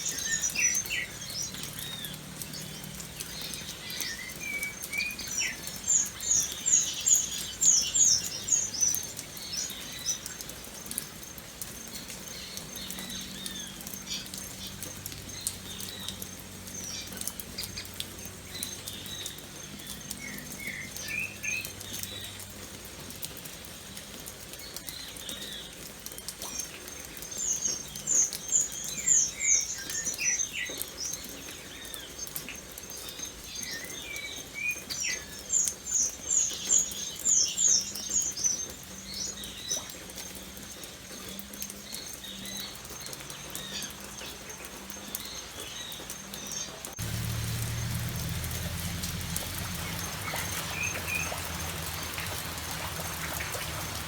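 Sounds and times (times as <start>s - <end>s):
birds chirping: 0.0s - 11.0s, 41.8s - 54.0s
rain: 0.0s - 54.0s.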